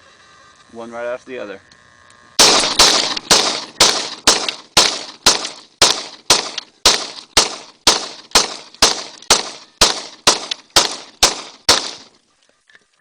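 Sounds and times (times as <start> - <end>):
pistol shots with echo: 2.4 - 12.2.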